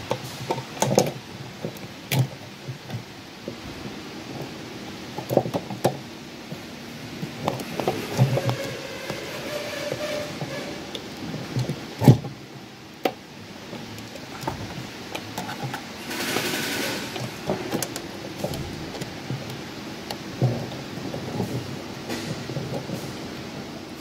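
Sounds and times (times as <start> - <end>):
hand tools clicking and knocking: 7.2 - 12.4, 13.0 - 24.0.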